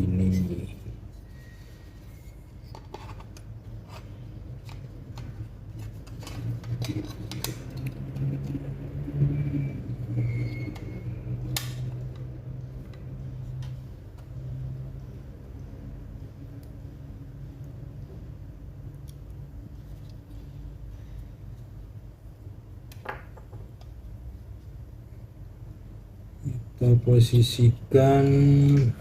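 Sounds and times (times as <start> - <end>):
low hum: 0.0 - 22.8
laptop parts clicking and tapping: 4.6 - 8.7.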